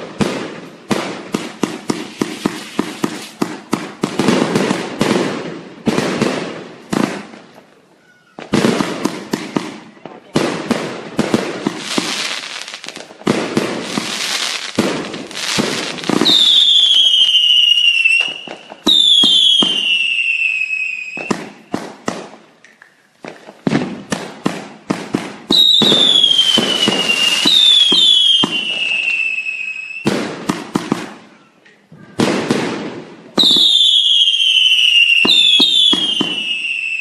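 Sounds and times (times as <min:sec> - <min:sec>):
fireworks bangs and crackling pops: 0:00.0 - 0:37.0
descending firework whistles: 0:14.1 - 0:21.7, 0:25.5 - 0:30.2, 0:33.4 - 0:37.0.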